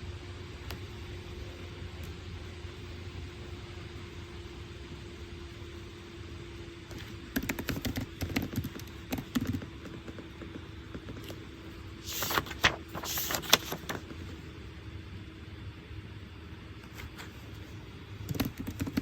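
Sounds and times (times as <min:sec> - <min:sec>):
steady low hum: 0:00.0 - 0:19.0
paper rustling: 0:09.9 - 0:14.4, 0:16.9 - 0:17.7.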